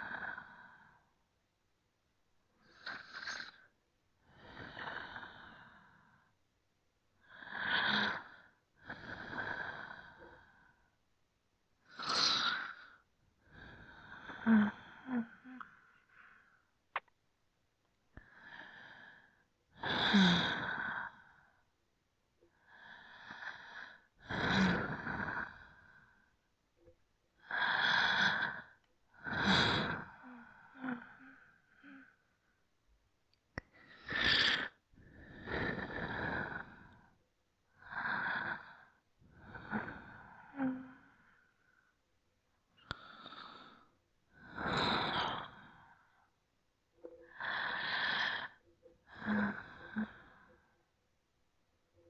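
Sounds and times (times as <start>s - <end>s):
person breathing deeply: 47.3s - 50.8s.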